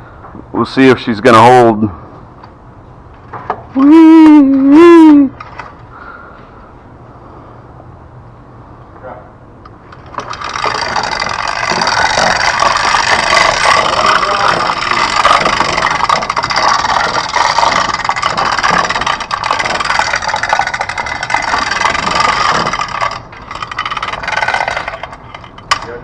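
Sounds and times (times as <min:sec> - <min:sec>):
garage door opener motor: 0:09.9 - 0:26.0
garage door rattling: 0:09.9 - 0:26.0.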